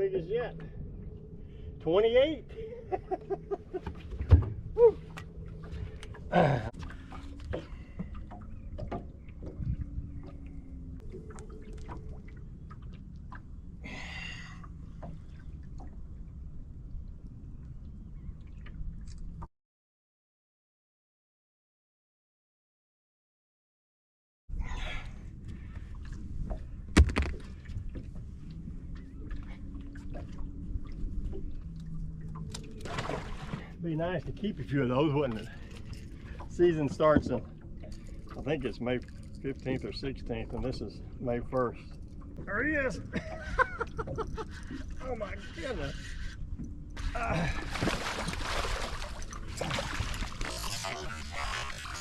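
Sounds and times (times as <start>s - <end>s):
knocks and clicks in a boat: 3.0s - 13.5s, 25.4s - 47.3s
water splash: 27.0s - 27.6s, 32.4s - 33.7s, 47.1s - 52.0s.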